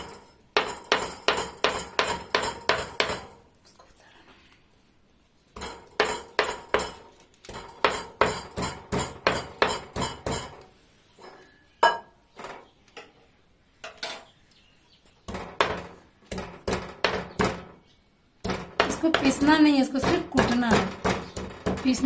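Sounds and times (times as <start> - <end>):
pestle striking mortar: 0.0 - 3.4, 5.6 - 10.6, 15.3 - 17.8, 18.4 - 22.0.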